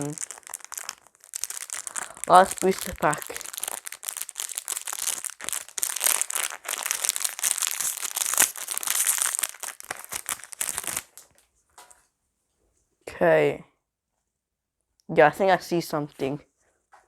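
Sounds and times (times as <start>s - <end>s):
foil wrapper crinkling and tearing: 0.0s - 11.4s.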